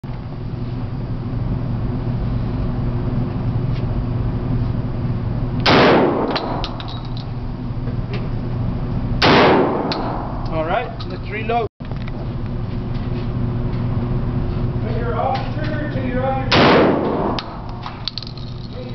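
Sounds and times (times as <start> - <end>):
steady low hum: 0.0 - 18.9
shotgun shots with echo: 5.6 - 6.6, 9.2 - 10.4, 16.5 - 17.6.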